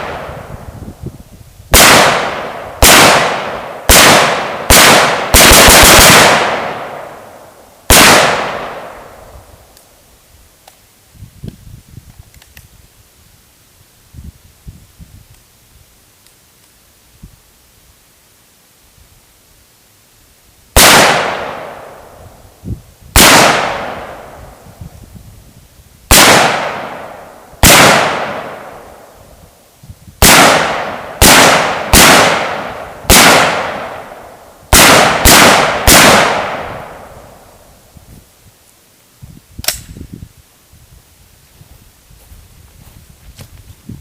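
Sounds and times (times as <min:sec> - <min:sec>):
rifle shots echoing: 0:00.0 - 0:00.6, 0:01.7 - 0:09.3, 0:20.8 - 0:22.2, 0:23.2 - 0:24.4, 0:26.1 - 0:29.2, 0:30.2 - 0:37.6
sharp click: 0:39.6 - 0:40.0.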